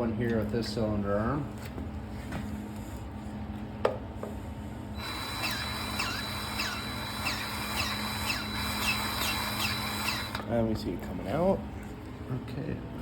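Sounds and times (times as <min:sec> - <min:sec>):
grease gun motor whine: 0:05.0 - 0:10.4.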